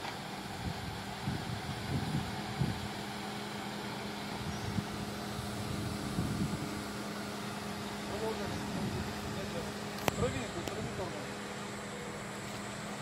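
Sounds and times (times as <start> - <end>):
engine running at low revs: 0.0 - 13.0.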